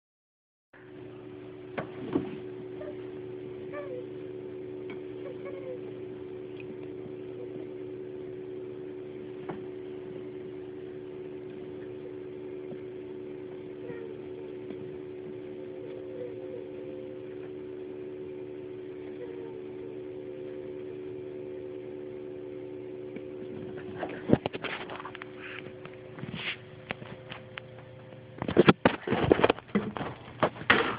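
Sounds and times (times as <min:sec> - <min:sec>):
steady low hum: 0:00.8 - 0:30.9
rabbit making faint noises: 0:05.2 - 0:06.0, 0:13.8 - 0:14.6.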